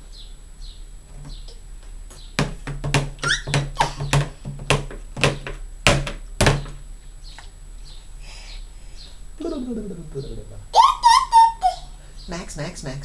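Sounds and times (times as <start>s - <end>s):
baby banging on a table: 2.4s - 6.8s
baby squealing: 3.2s - 4.1s, 10.6s - 12.0s.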